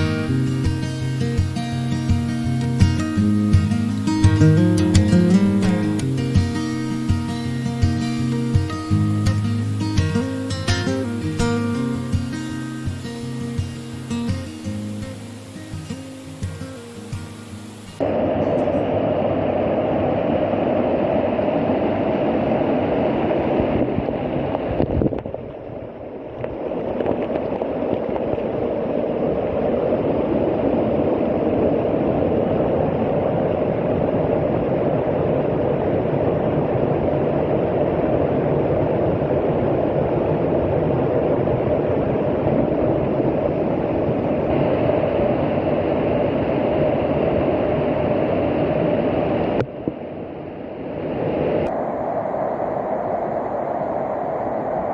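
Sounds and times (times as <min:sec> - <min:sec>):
waterfall rushing: 0:00.0 - 0:24.4.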